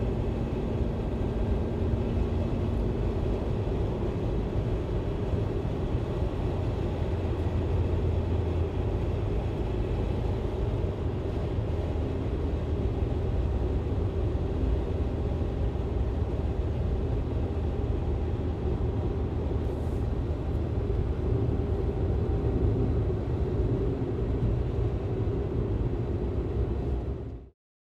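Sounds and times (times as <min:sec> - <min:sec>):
car engine and road noise: 0:00.0 - 0:27.5.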